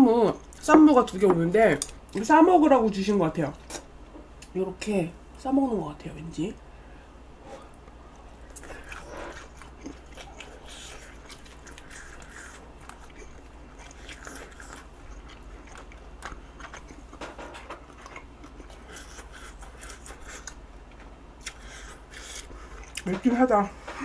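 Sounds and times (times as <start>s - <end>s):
person chewing: 7.6s - 23.1s.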